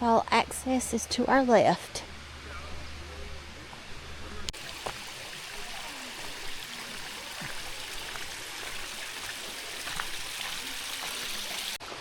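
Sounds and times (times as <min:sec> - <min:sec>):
water rushing over rocks: 0:04.6 - 0:11.8.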